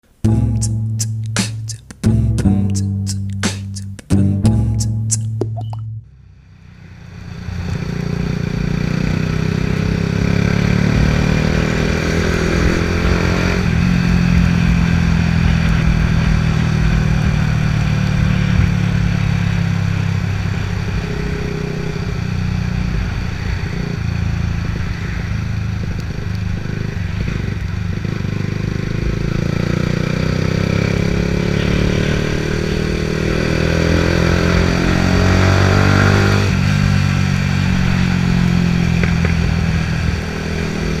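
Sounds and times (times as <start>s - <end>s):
motorcycle engine revving: 6.2s - 41.0s
exhaust crackles and pops: 13.1s - 20.5s, 24.9s - 28.1s, 38.8s - 39.9s.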